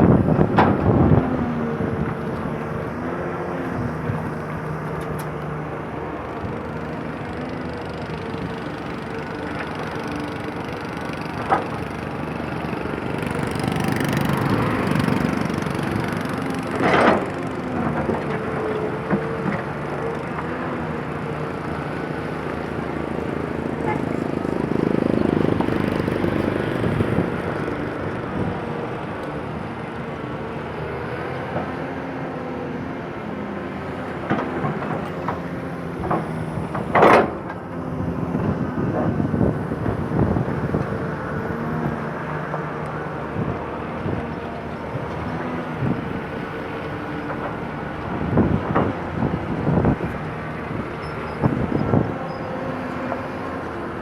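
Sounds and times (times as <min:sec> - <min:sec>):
excavator diesel engine running: 0:00.0 - 0:54.0
knocks and clanks: 0:34.0 - 0:37.6.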